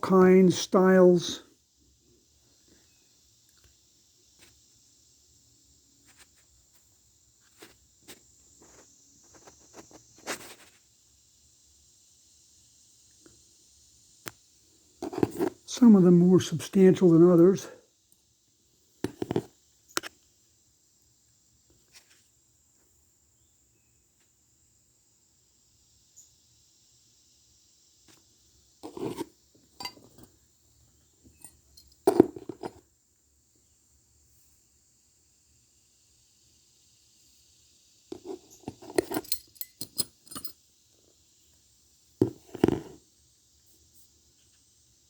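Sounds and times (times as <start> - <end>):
metal belt buckles clinking: 29.8 - 30.3, 31.3 - 32.6, 38.2 - 40.6
belt buckle clicks: 38.8 - 40.6.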